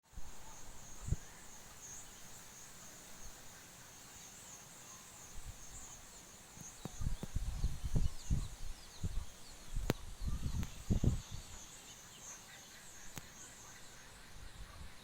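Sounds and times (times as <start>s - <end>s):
wind buffeting microphone: 0.1s - 1.5s, 6.8s - 11.6s
insects trilling: 0.2s - 15.0s.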